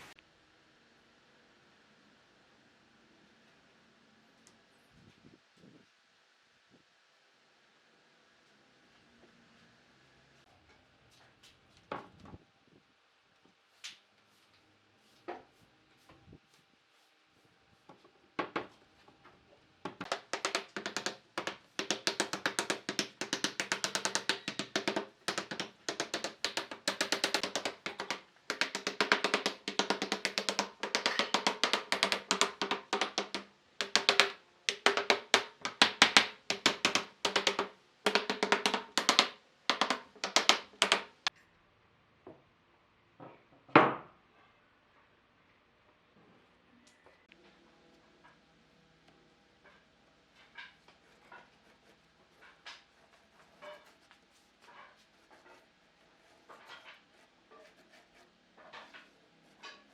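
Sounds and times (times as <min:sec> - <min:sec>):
rapid knocking on wood: 0:19.8 - 0:41.3.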